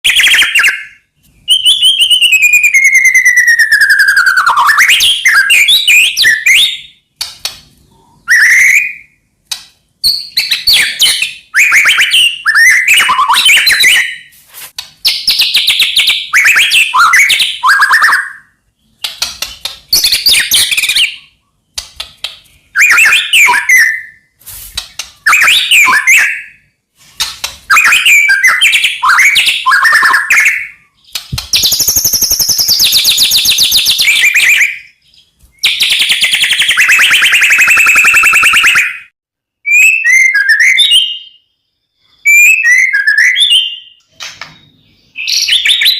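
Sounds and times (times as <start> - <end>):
bird singing whistled phrases: 0.0 - 7.0, 8.1 - 9.2, 10.0 - 14.3, 15.0 - 19.2, 19.9 - 21.4, 22.7 - 24.3, 25.2 - 26.7, 27.7 - 44.0, 44.8 - 45.9.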